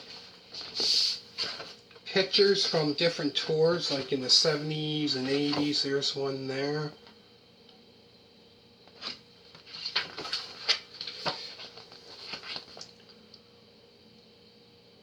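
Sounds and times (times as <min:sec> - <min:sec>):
paper rustling and crinkling: 0:00.0 - 0:01.8, 0:02.4 - 0:03.0, 0:05.2 - 0:05.8, 0:09.0 - 0:12.9.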